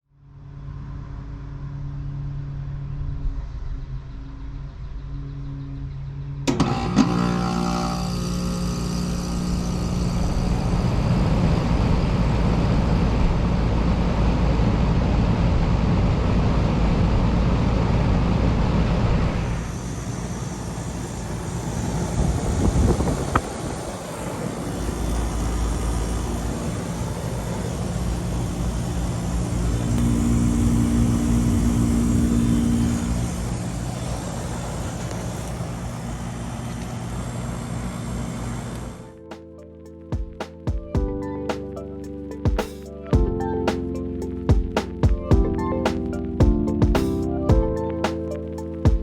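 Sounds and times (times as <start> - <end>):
air conditioner fan rushing: 6.4 - 39.4
air conditioner low hum: 6.5 - 39.1.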